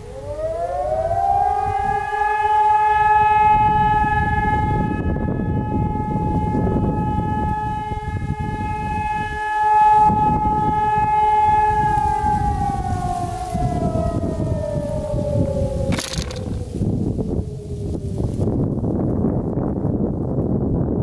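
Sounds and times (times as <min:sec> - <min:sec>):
electronic siren sliding down: 0:00.0 - 0:18.8
faint second siren: 0:00.0 - 0:19.8
low rumbling noise: 0:00.0 - 0:21.0.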